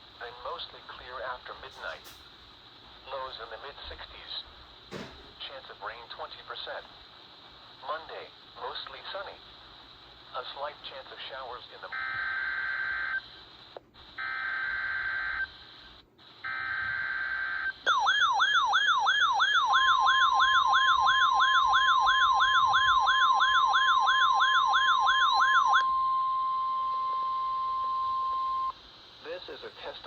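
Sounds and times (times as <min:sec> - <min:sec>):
sweeping alarm: 0:14.2 - 0:15.6, 0:16.4 - 0:28.8
steady warning tone: 0:16.5 - 0:28.8.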